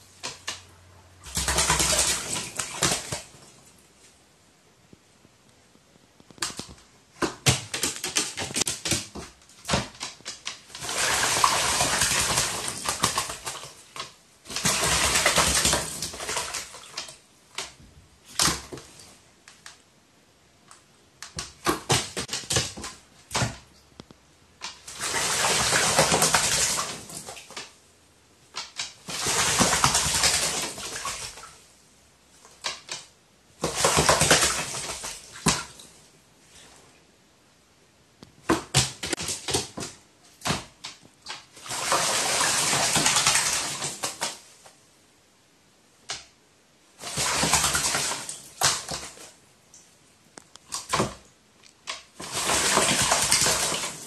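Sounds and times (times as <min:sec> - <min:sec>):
bird splashing and flapping in water: 0:00.2 - 0:03.6, 0:06.4 - 0:19.1, 0:21.2 - 0:23.6, 0:24.6 - 0:27.8, 0:28.6 - 0:31.6, 0:32.4 - 0:36.0, 0:38.4 - 0:44.5, 0:47.0 - 0:49.4, 0:51.9 - 0:54.0.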